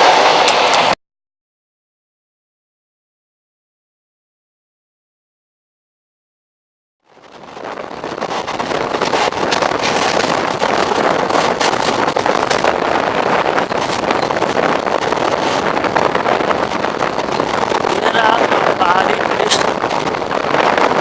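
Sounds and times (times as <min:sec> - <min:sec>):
passenger train running: 0:00.0 - 0:01.0, 0:07.2 - 0:21.0
train wheel clicks: 0:08.2 - 0:17.9.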